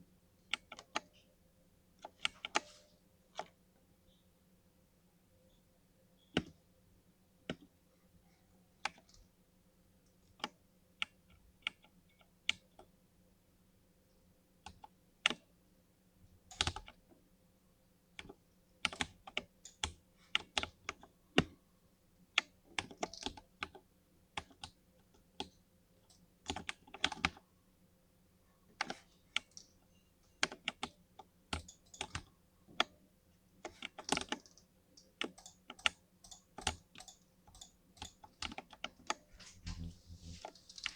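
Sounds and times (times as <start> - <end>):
keyboard keys clicking: 30.4 - 32.9, 33.6 - 40.9.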